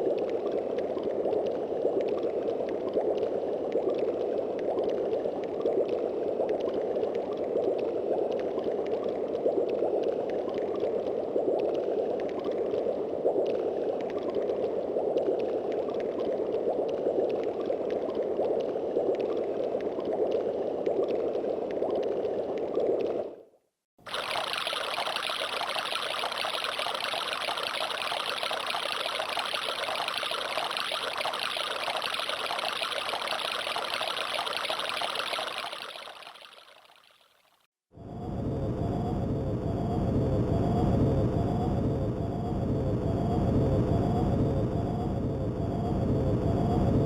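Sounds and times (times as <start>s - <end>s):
keyboard bubbling water effect: 0.0s - 23.4s, 24.0s - 37.3s.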